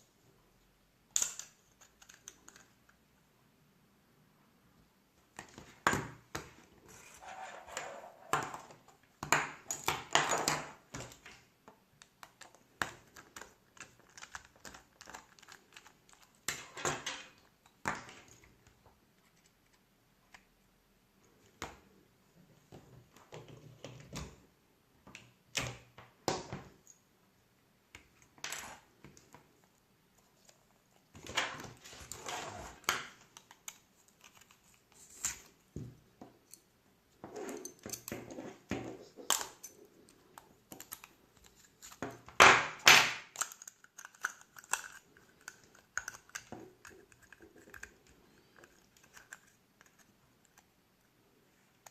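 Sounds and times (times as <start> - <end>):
small hard objects clicking and tapping: 39.2 - 50.1.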